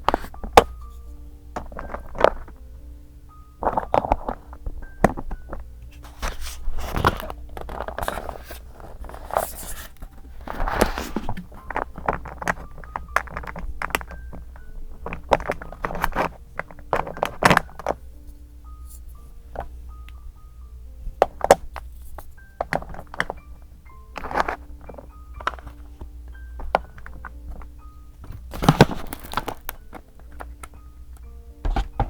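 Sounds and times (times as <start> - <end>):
paper rustling and scraping: 0.0 - 0.6, 5.9 - 14.0, 26.8 - 30.6
quiet background music: 0.0 - 32.0.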